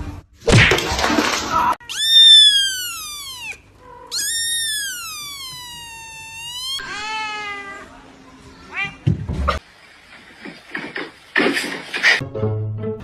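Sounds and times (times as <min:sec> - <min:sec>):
cat meowing: 0:01.8 - 0:08.0.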